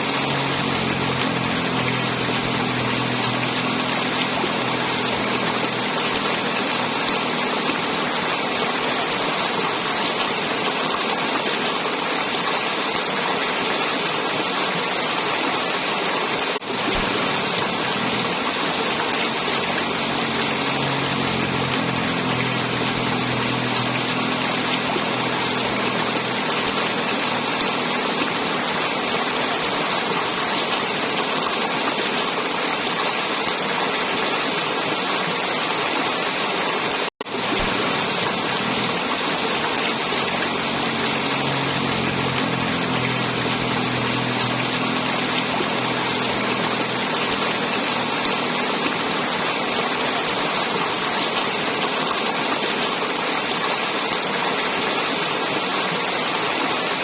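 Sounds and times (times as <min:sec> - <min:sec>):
river water flowing: 0:00.0 - 0:57.0.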